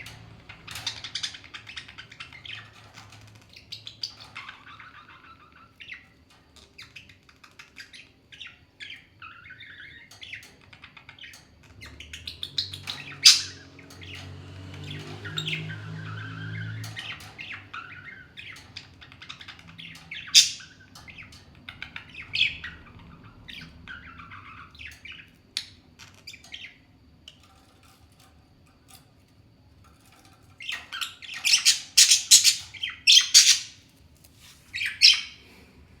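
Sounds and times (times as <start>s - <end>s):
parrots chattering and chirping: 0.0s - 36.0s
parrots squawking harshly: 20.3s - 20.8s, 31.4s - 33.8s.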